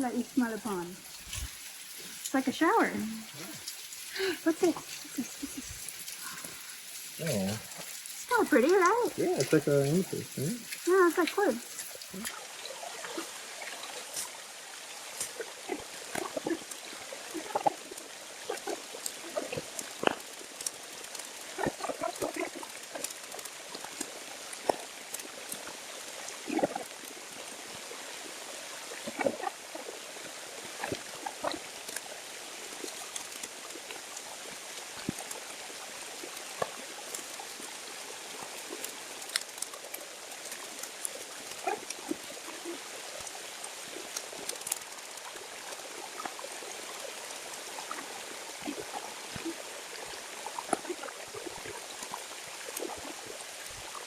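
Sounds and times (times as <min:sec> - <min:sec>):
small waterfall into a pool: 0:00.0 - 0:54.0
sharp clicks and snaps: 0:39.2 - 0:42.1.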